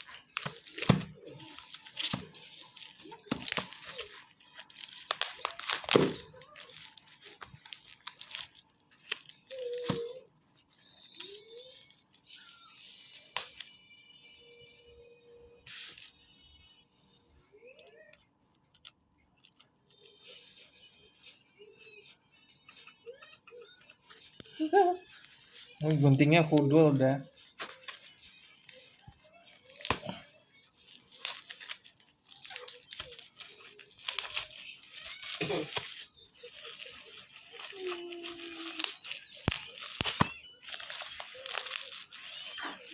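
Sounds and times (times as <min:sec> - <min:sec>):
packaging rustling and crinkling: 0:00.0 - 0:12.2, 0:25.2 - 0:42.9.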